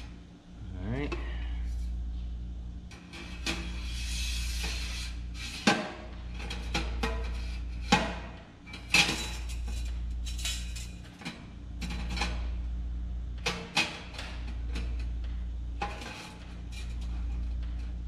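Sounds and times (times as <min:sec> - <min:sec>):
steady low hum: 0:00.0 - 0:18.0
metal pipes clanking and scraping: 0:02.9 - 0:12.4, 0:15.8 - 0:17.8.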